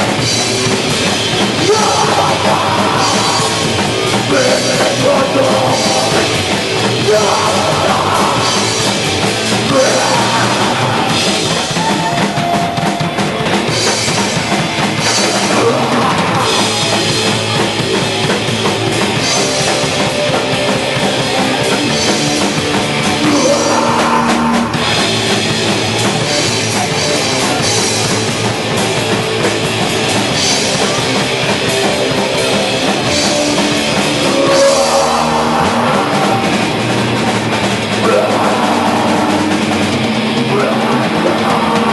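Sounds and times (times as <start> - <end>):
drum kit: 0.0 - 41.9
punk band playing loud: 0.0 - 41.9.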